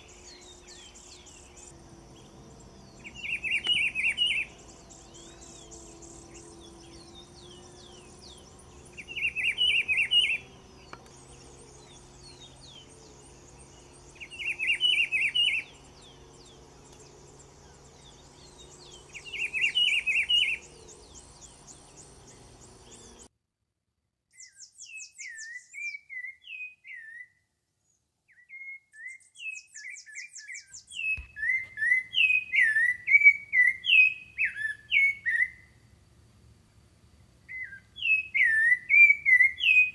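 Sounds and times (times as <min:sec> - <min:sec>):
background birds: 0:00.0 - 0:23.3, 0:24.3 - 0:39.9
bird singing bright phrase: 0:00.0 - 0:23.3, 0:24.4 - 0:27.4, 0:28.3 - 0:35.7, 0:37.5 - 0:39.9
bird quick chirps: 0:03.0 - 0:17.2, 0:28.3 - 0:35.7.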